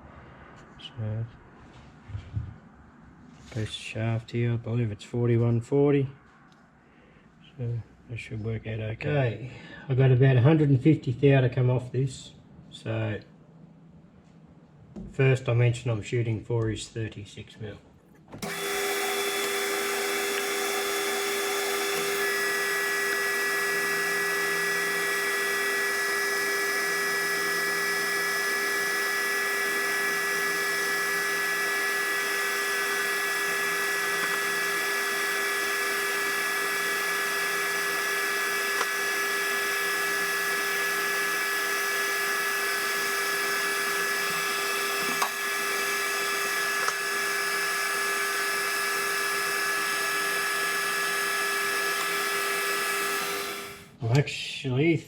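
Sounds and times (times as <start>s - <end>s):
metal lathe whining: 18.4s - 53.9s.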